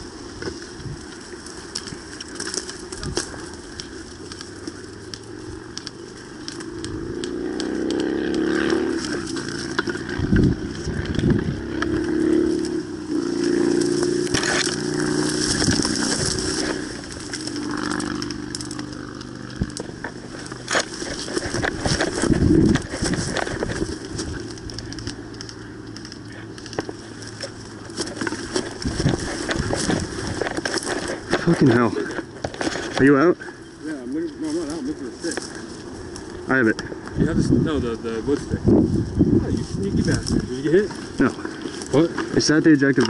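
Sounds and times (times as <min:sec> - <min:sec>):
clicks and crackling: 0:00.0 - 0:43.0.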